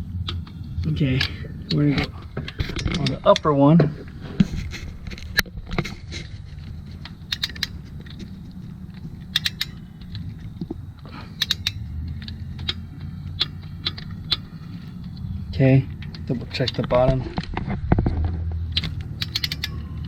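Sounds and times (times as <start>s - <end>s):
low steady hum: 0.0s - 20.0s
ratcheting wrench clicking: 6.9s - 10.7s, 11.3s - 15.3s, 18.7s - 20.0s.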